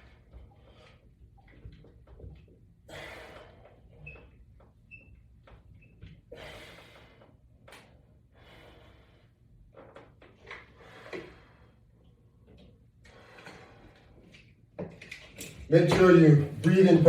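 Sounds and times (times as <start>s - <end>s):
man breathing hard: 2.9s - 3.8s, 6.3s - 7.4s, 8.3s - 9.4s, 10.7s - 11.9s.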